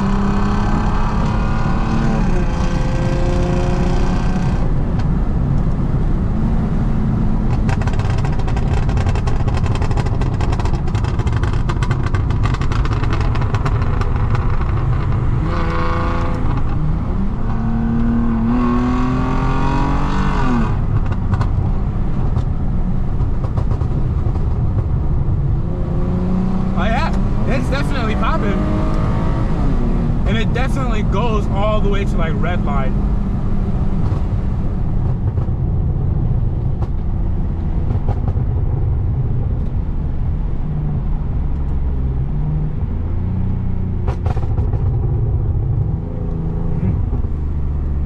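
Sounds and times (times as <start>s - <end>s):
car engine revving: 0.0s - 48.0s
exhaust pops and crackles: 7.4s - 17.6s, 20.5s - 25.7s, 26.7s - 29.1s, 29.8s - 33.1s, 33.7s - 42.0s, 43.9s - 48.0s.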